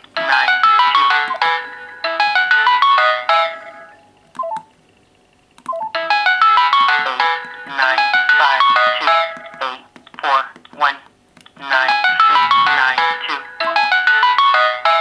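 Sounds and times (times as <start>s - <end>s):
phone ringtone melody: 0.2s - 4.6s, 5.7s - 9.9s, 11.7s - 15.0s.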